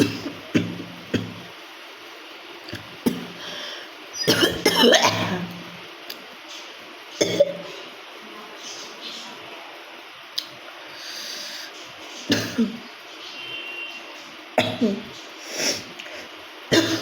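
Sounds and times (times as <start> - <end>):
woman coughing: 0.0 - 1.4, 4.2 - 5.5, 7.2 - 7.6, 12.3 - 12.8, 14.6 - 15.1, 16.7 - 17.0.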